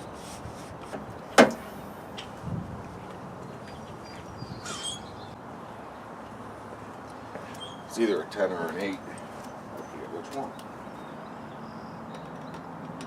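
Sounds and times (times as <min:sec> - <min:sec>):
bird chirping: 0:03.4 - 0:06.1, 0:07.1 - 0:12.8.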